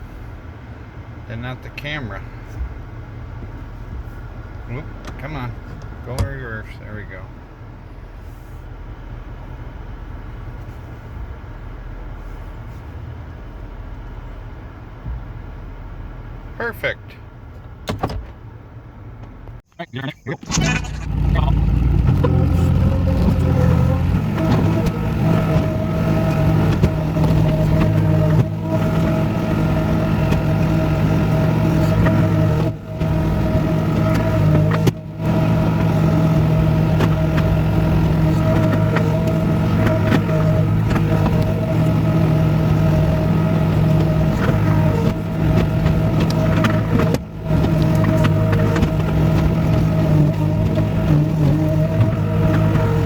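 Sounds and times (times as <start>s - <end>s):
vehicle engine low rumble: 0.0s - 53.0s.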